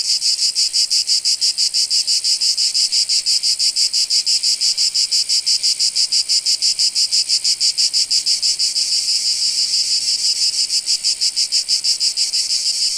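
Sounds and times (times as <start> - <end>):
cicadas buzzing: 0.0 - 12.9.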